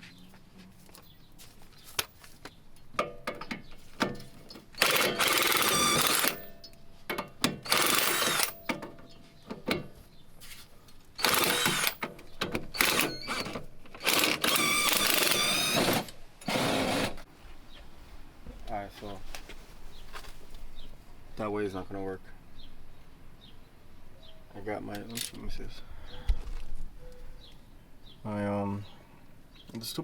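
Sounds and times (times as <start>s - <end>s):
tool working on a nut: 4.1s - 6.6s, 7.2s - 8.8s, 11.2s - 17.2s.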